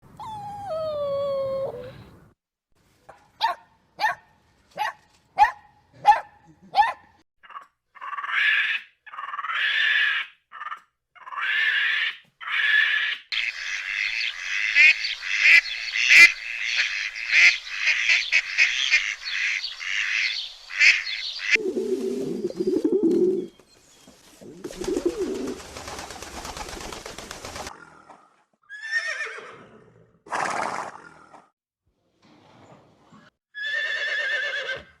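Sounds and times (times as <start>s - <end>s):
farm animals calling: 7.4s - 23.5s
honking bird calls: 13.3s - 21.6s
flock calling: 13.3s - 23.5s.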